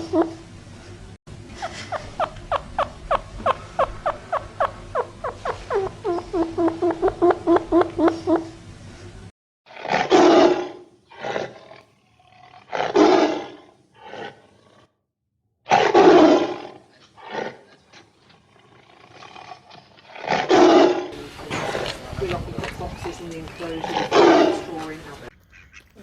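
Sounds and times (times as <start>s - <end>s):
animal grunting calls: 1.5s - 8.6s, 15.7s - 25.9s
large animal roaring: 9.7s - 14.9s, 15.7s - 22.1s.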